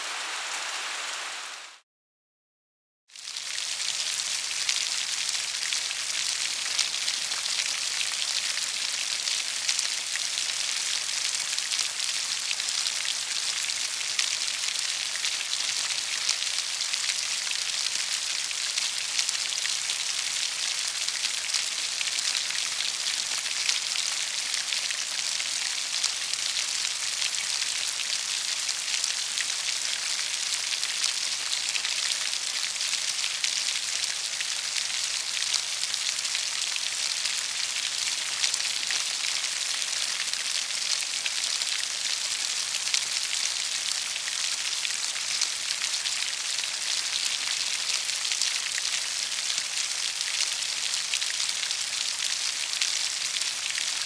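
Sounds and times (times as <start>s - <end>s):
steady rain falling: 0.0s - 1.8s.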